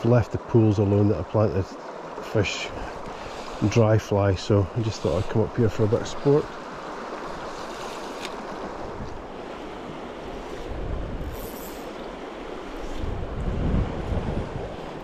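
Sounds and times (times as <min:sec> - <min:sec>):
fast-flowing river water: 0:00.0 - 0:15.0
wind buffeting microphone: 0:08.5 - 0:15.0.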